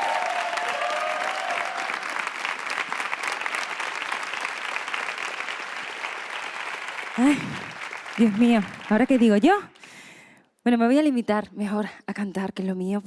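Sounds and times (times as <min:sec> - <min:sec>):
audience applauding: 0:00.0 - 0:09.6.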